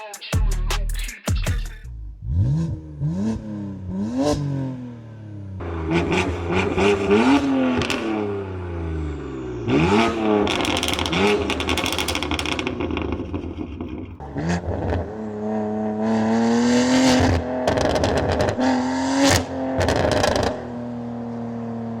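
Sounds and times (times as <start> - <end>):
car engine revving: 1.8 - 22.0
exhaust crackling pops: 7.7 - 8.1, 10.3 - 14.2, 17.2 - 18.6, 19.3 - 20.6.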